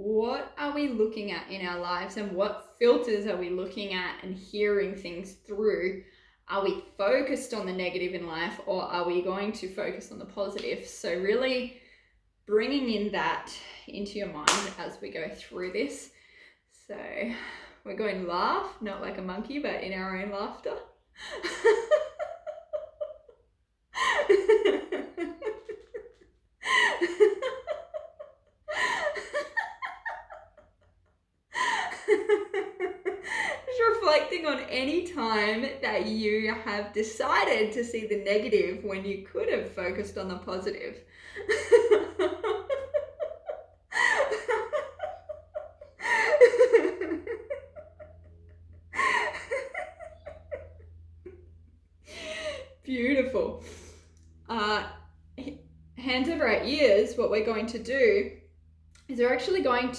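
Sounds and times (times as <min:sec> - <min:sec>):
woman laughing: 0:21.2 - 0:34.0, 0:41.4 - 0:51.5.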